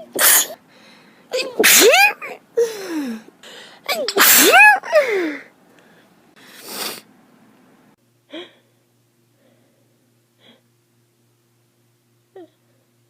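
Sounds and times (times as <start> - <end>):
person sneezing: 0.0 - 0.6, 1.3 - 2.8, 3.9 - 5.3.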